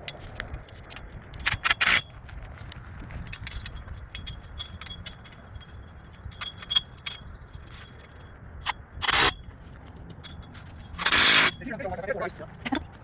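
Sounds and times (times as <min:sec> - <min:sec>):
small metal parts clinking: 0:00.0 - 0:12.7.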